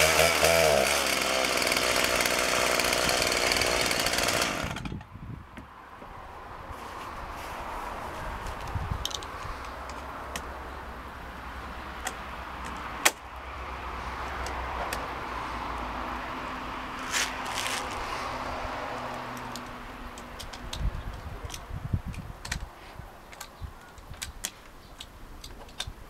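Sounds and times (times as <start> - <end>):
chainsaw engine idling: 0.0 - 5.0.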